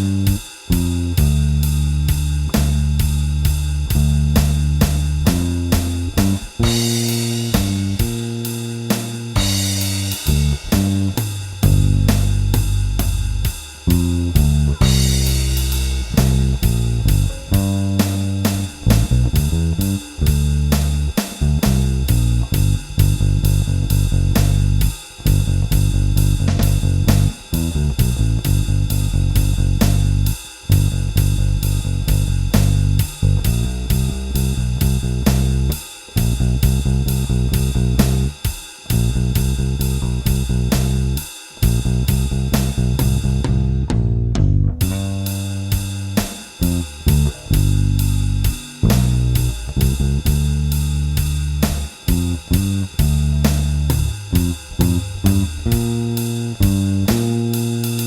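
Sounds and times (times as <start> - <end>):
drum kit beat on cymbals: 0.0 - 58.0
electric bass guitar: 0.0 - 58.0
cymbal crash: 6.4 - 23.0, 45.2 - 52.1.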